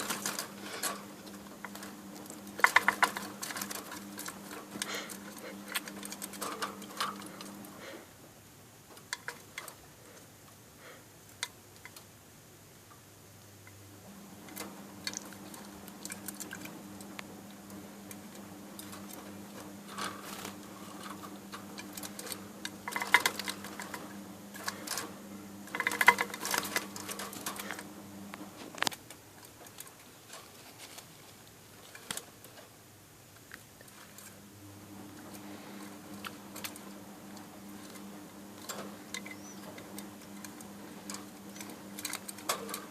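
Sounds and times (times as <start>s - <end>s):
steady low hum: 0.0s - 42.9s.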